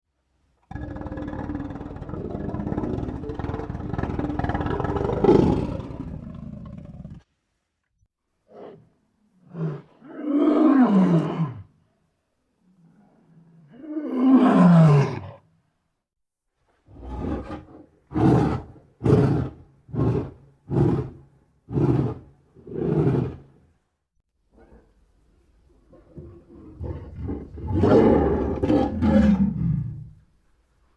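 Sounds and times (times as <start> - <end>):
lion growling and roaring: 0.6 - 7.3, 9.4 - 11.7, 12.8 - 15.4, 16.9 - 23.6, 25.9 - 30.3.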